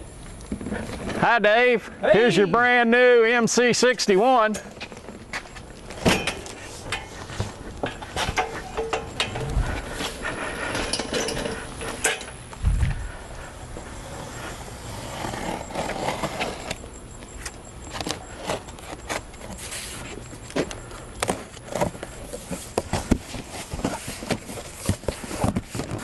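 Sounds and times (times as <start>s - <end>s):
low steady rumble: 6.8s - 17.9s
knocks and scrapes on cardboard box: 21.2s - 26.0s.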